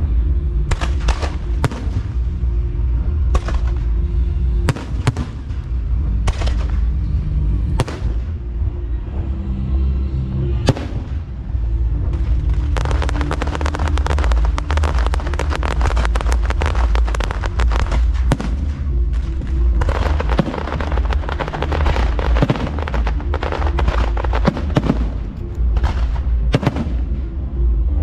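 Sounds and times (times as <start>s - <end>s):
fireworks deep booms: 12.2s - 18.9s, 19.6s - 27.1s
fireworks crackling bangs: 12.2s - 25.2s.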